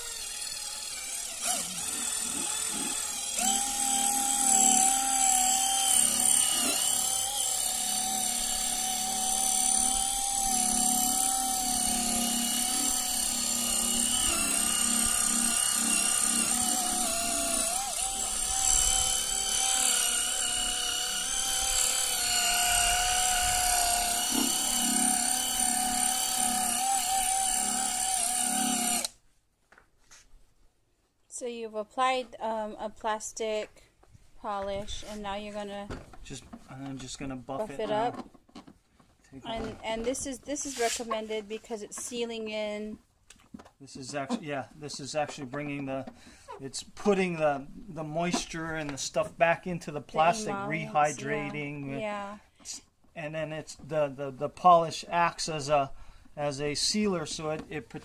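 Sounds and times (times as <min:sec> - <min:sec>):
electric buffer motor whine: 0:00.0 - 0:29.2, 0:50.2 - 0:51.7.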